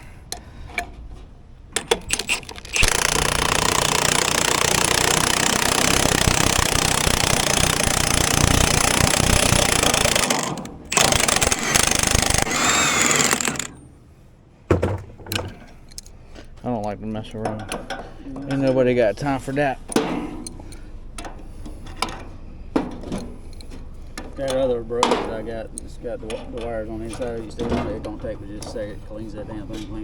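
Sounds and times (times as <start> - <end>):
drill clicks: 1.8 - 13.8
power drill wire brush scouring: 2.1 - 13.7.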